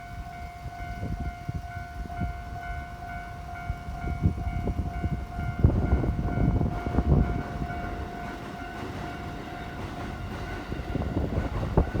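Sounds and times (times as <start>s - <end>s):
crossing warning alarm ringing: 0.0s - 12.0s
electric train wheels rumbling: 0.0s - 12.0s.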